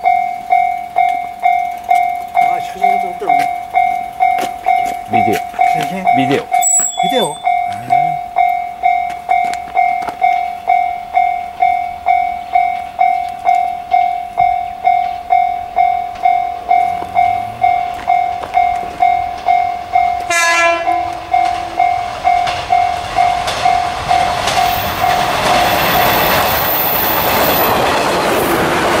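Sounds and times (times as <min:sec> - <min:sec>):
level-crossing alarm ringing: 0:00.0 - 0:28.6
train wheels rumbling on rail: 0:00.0 - 0:29.0
train horn: 0:20.2 - 0:22.0.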